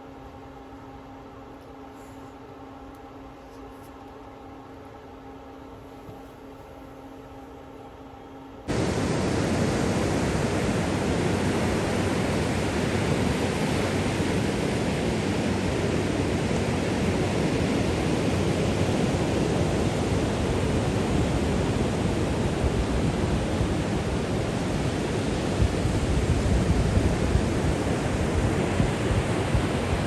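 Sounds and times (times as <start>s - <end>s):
steady rushing noise: 8.7s - 30.0s.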